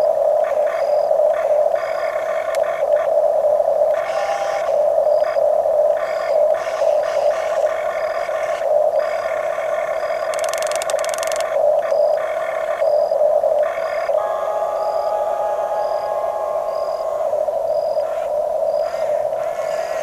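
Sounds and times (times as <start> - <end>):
rapid clicking: 9.7 - 11.6.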